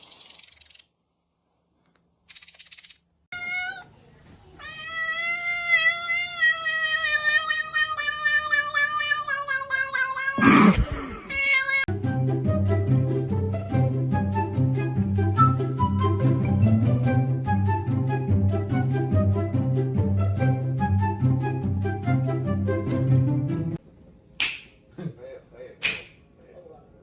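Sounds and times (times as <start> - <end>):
cat yowling: 4.6 - 11.8.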